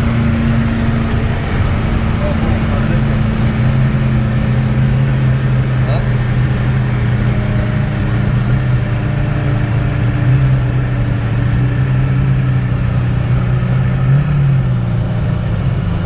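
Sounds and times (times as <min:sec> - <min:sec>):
car engine running: 0:00.0 - 0:16.0.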